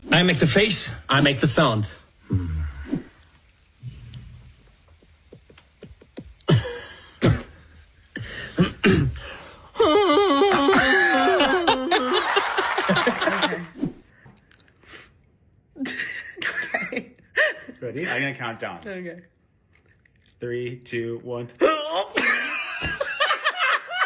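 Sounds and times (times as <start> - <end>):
person making silly vocal sounds: 8.6 - 12.2.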